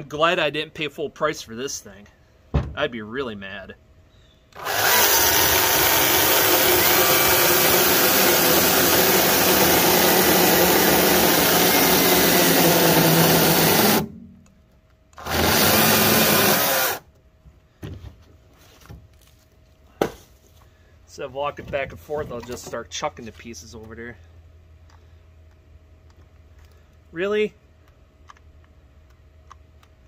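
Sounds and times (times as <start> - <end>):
chainsaw cutting firewood: 4.6 - 14.1, 15.2 - 17.1.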